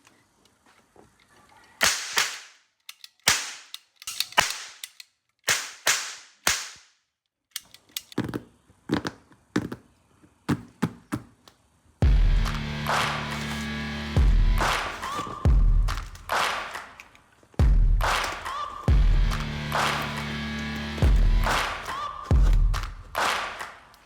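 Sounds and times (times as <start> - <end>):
toy gun cracks: 1.8 - 8.2.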